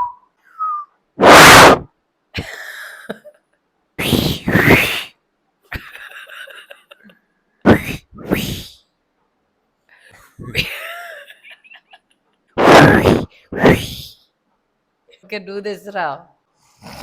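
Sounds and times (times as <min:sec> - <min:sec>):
sneeze-like mouth noises: 0:01.2 - 0:01.9, 0:04.0 - 0:05.2, 0:07.6 - 0:08.9, 0:12.6 - 0:14.2.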